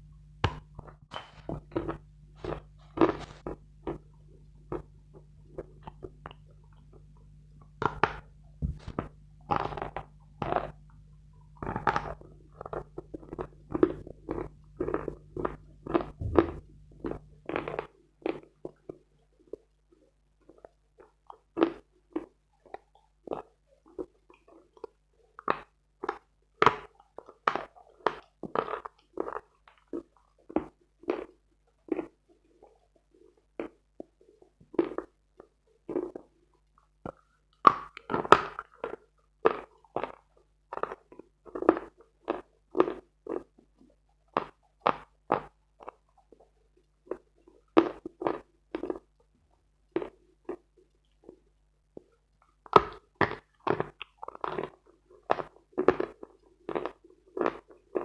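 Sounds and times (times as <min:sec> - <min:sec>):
chalk crunching while chewed: 0:00.5 - 0:04.1, 0:37.1 - 0:46.5, 0:50.0 - 0:58.0.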